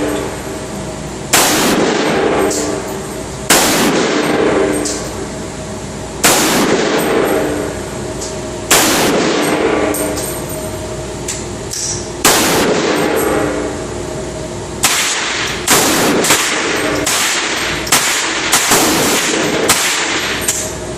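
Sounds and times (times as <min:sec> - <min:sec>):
rifle shots echoing: 0:01.3 - 0:02.9, 0:03.5 - 0:04.8, 0:06.2 - 0:07.7, 0:08.7 - 0:10.2, 0:12.2 - 0:13.6, 0:14.8 - 0:20.5.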